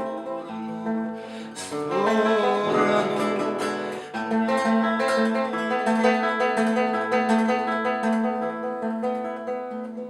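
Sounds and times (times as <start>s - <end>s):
person singing: 0.0s - 5.2s
acoustic guitar plucked and strummed: 0.0s - 10.0s.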